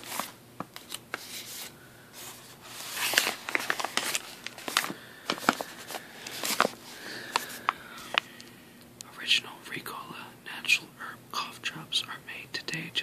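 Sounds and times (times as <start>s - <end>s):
plastic bag crinkling: 2.2s - 8.4s.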